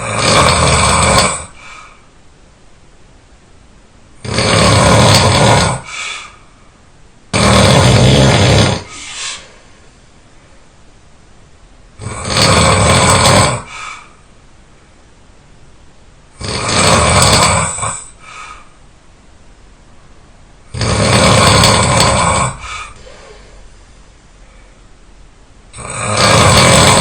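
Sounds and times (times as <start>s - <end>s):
person snoring loudly: 0.0s - 1.8s, 4.2s - 6.4s, 7.3s - 9.2s, 12.0s - 14.1s, 16.4s - 18.2s, 20.7s - 23.0s, 25.7s - 27.0s.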